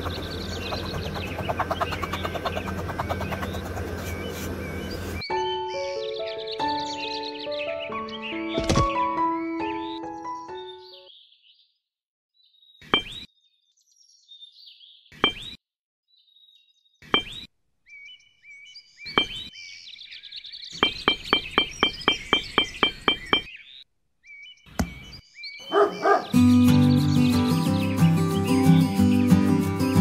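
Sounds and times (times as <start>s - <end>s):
faint birds chirping: 0.0s - 30.0s
hammer tapping small nails: 20.8s - 23.5s.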